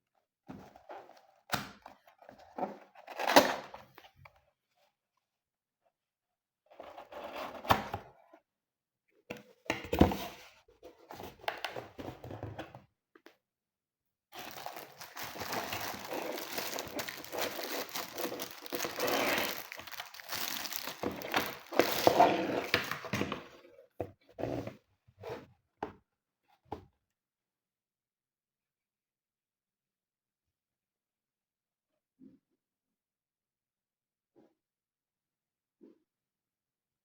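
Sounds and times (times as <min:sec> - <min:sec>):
packaging crinkling and rustling: 0:14.4 - 0:23.5.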